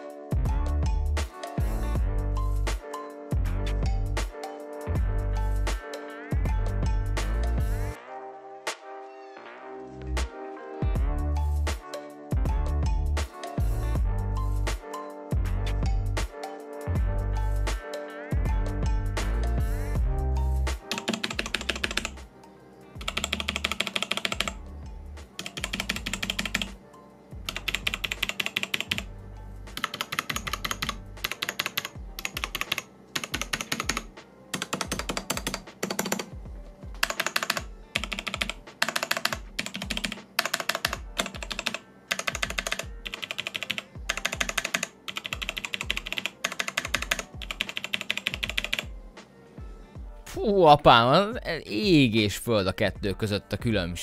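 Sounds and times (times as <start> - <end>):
background music: 0.0 - 54.0
mechanical keyboard typing: 20.8 - 22.2, 23.0 - 24.6, 25.4 - 26.8, 27.5 - 29.1, 29.8 - 36.4, 37.0 - 48.9.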